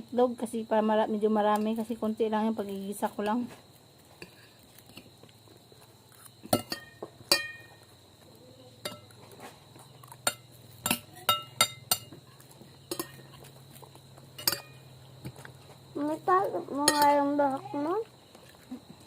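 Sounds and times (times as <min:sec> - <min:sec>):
cutlery clinking on plate: 0:06.5 - 0:07.8, 0:08.8 - 0:09.2, 0:10.1 - 0:12.2, 0:12.9 - 0:13.4, 0:14.4 - 0:14.8.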